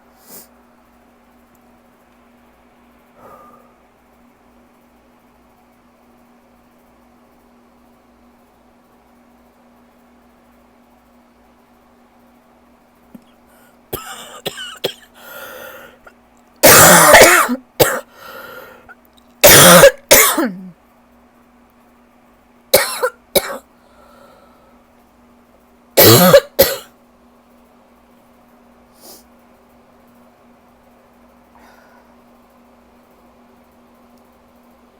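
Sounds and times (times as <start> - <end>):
person coughing harshly: 13.9 - 15.9, 16.6 - 18.6, 19.4 - 20.7, 22.7 - 23.6, 26.0 - 26.9.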